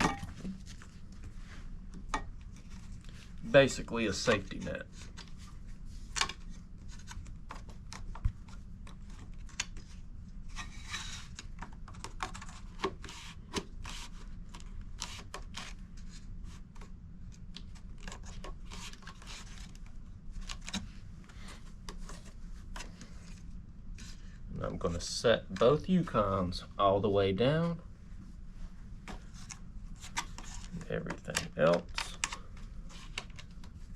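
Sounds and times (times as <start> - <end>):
low steady hum: 0.0 - 33.9
plastic mats clicking and rubbing: 6.1 - 10.1, 10.9 - 24.3, 29.0 - 33.9.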